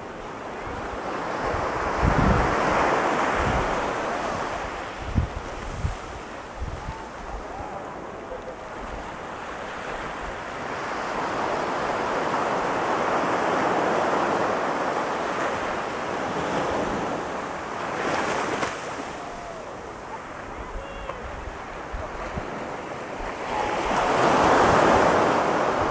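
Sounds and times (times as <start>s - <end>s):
surf breaking on a beach: 0.0s - 25.9s
wind buffeting microphone: 0.7s - 9.2s.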